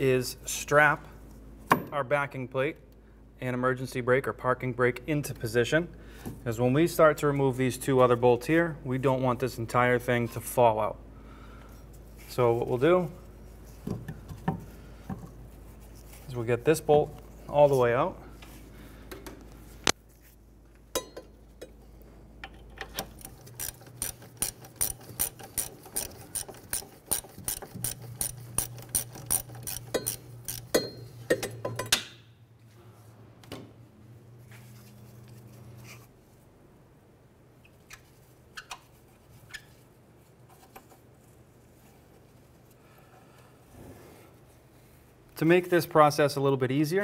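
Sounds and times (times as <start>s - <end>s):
hand ratchet clicking: 22.8s - 32.0s.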